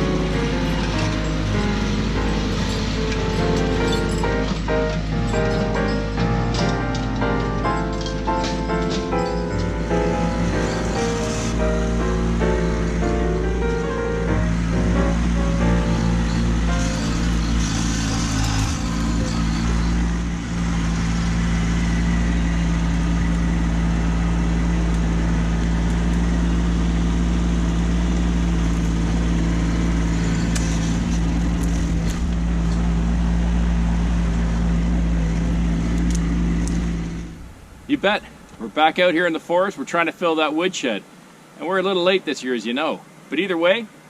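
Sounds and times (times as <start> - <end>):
tractor diesel engine running: 0.0 - 44.0.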